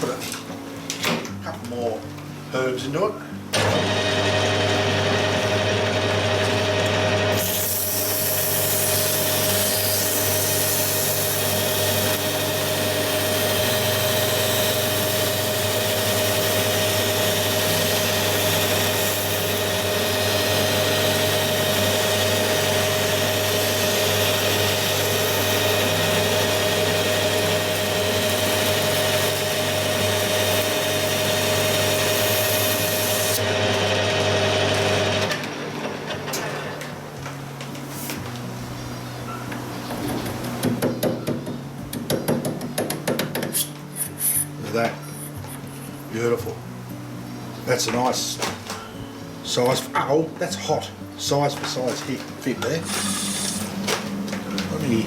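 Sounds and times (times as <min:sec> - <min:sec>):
metal lathe humming: 0:03.6 - 0:36.6, 0:52.8 - 0:55.0
abrasive paper sanding hiss: 0:07.4 - 0:16.5.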